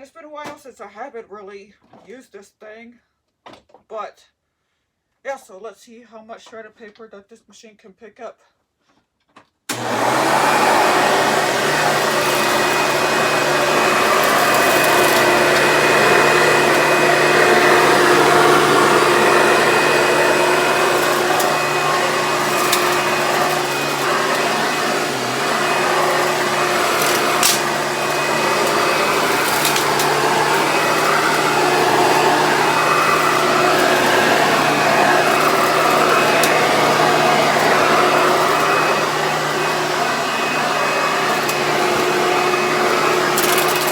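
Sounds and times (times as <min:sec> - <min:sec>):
vacuum cleaner running: 0:09.7 - 0:43.9.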